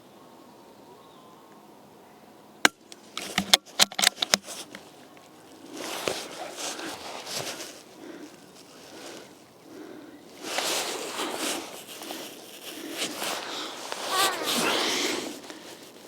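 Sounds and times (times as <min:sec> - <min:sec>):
rifle bolt clicking: 0:02.7 - 0:04.5
rustling and scuffing: 0:02.9 - 0:16.0.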